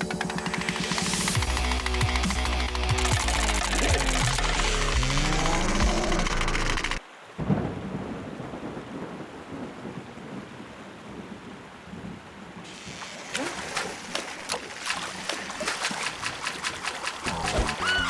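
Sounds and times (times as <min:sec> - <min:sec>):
music with gliding pitched sounds: 0:00.0 - 0:07.0
steady rain-like hiss: 0:07.0 - 0:13.3.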